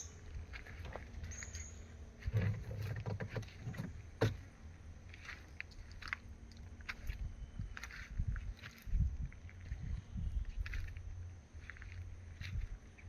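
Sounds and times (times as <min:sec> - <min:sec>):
boat engine rumbling: 0:00.0 - 0:08.3.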